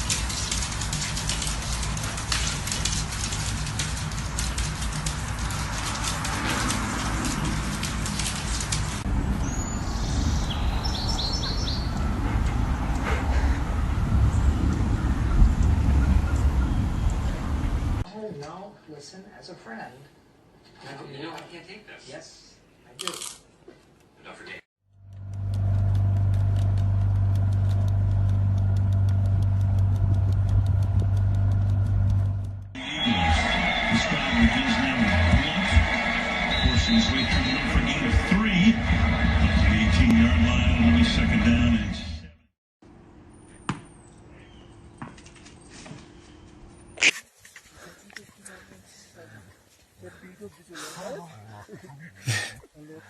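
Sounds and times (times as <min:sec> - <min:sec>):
low motor hum: 0:24.9 - 0:32.8
low rumble: 0:24.9 - 0:32.8
fast faint ticking: 0:25.1 - 0:32.6.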